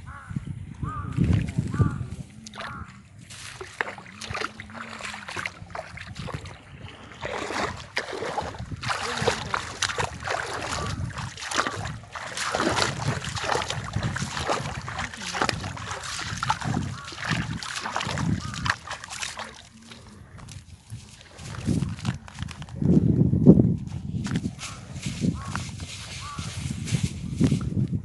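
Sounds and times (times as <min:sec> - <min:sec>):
paddle splashing in water: 0:02.4 - 0:22.2.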